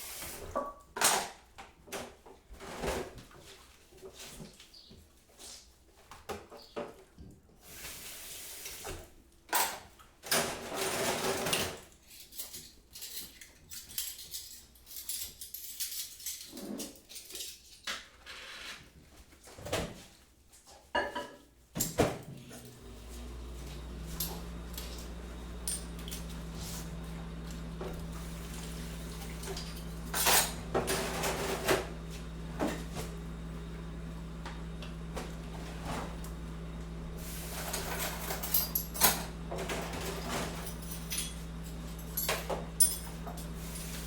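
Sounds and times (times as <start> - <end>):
appliance electrical hum: 21.9 - 44.0.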